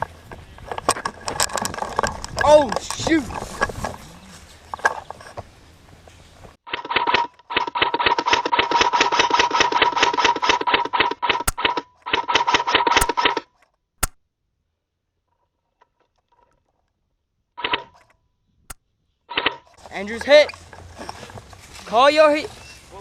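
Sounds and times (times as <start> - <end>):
airsoft gun firing bursts: 6.8 - 13.4
single sharp cracks: 14.0 - 14.2.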